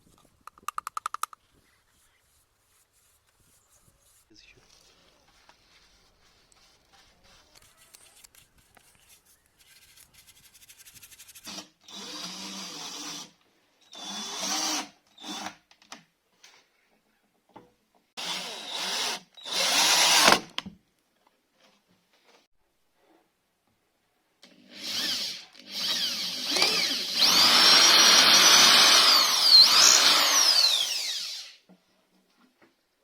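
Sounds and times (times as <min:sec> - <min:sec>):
power drill motor: 0:24.5 - 0:31.6.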